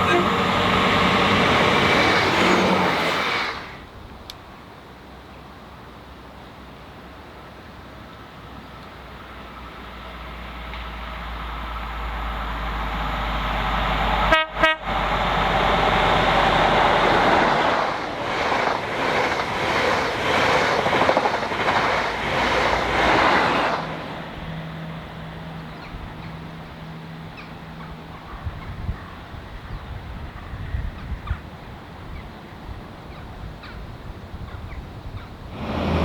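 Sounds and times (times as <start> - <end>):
train horn blasts: 0.0 - 0.7, 14.2 - 15.0
train wheels clattering: 17.1 - 23.9.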